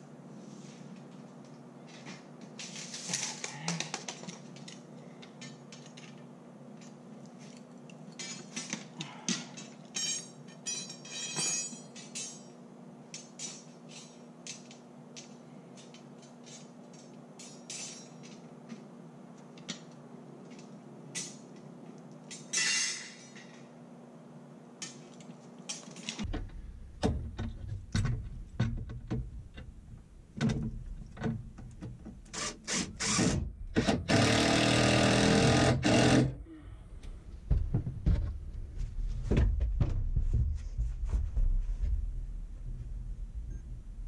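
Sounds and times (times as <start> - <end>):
power tool running: 32.4 - 36.4.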